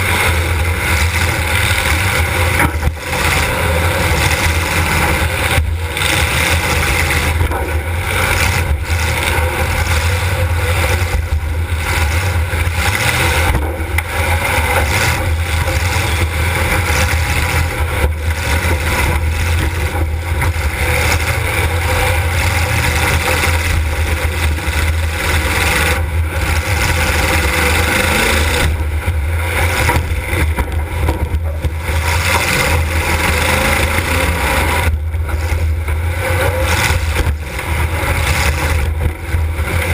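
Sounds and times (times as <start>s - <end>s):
car engine running hard: 0.0s - 39.9s.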